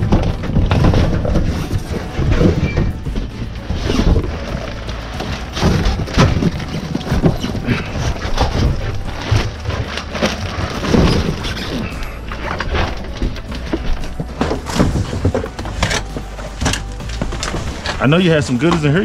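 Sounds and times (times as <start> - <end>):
thumps and knocks of junk: 0.0 - 19.0.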